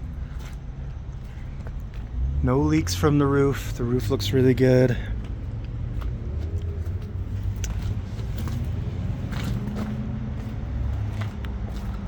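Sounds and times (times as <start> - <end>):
low outdoor rumble: 0.0 - 12.0
faint footsteps: 0.2 - 2.2, 5.2 - 12.0.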